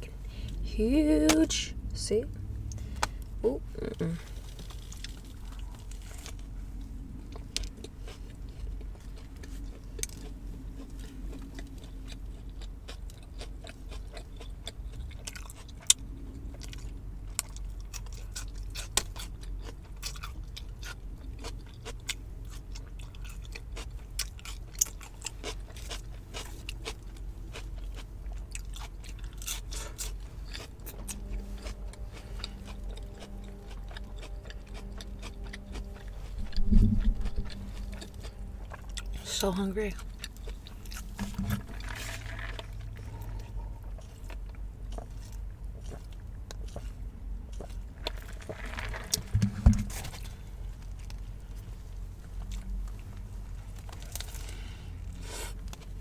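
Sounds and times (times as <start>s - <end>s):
low rumble: 0.0s - 13.2s, 28.2s - 56.0s
faint steady hum: 0.0s - 56.0s
person chewing food: 4.2s - 56.0s.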